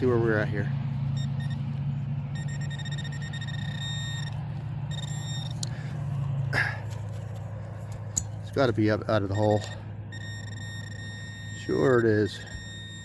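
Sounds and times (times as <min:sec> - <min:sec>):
low hum: 0:00.0 - 0:13.0
metal detector beep: 0:01.1 - 0:05.6, 0:09.2 - 0:13.0.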